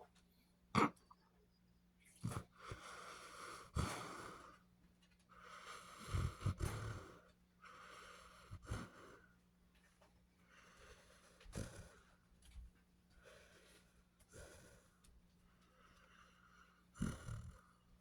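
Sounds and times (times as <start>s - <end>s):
dog snoring: 2.1s - 4.5s, 5.4s - 9.2s, 10.5s - 12.2s, 13.2s - 14.9s, 15.8s - 17.8s.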